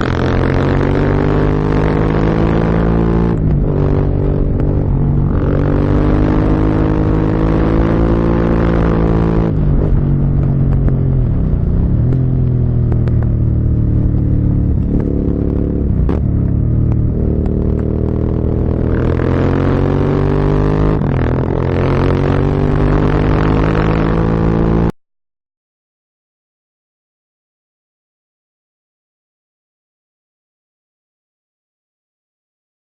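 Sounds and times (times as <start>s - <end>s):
motorcycle engine revving: 0.0s - 25.0s.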